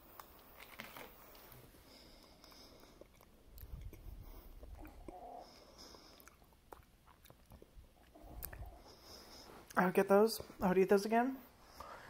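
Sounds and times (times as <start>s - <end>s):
chewing sticky food: 0.2s - 9.8s
wet mouth clicks: 2.4s - 8.9s.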